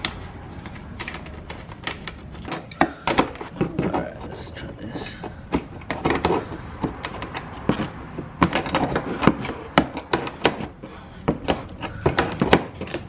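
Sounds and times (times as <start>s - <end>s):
latch clicks and knocks: 5.5s - 13.0s.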